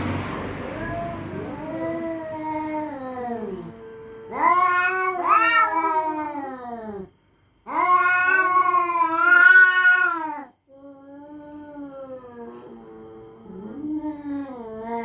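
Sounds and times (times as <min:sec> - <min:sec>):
cats yowling: 0:00.6 - 0:07.1, 0:07.7 - 0:10.6.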